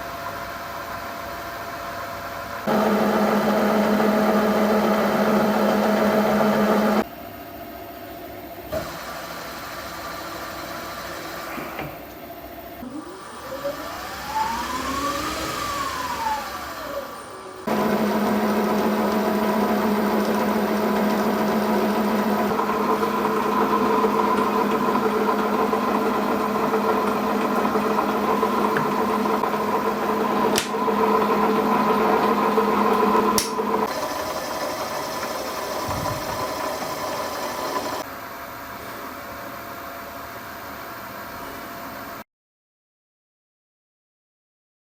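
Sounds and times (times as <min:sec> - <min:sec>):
lathe motor humming and whining: 0:02.6 - 0:07.0, 0:08.7 - 0:38.0.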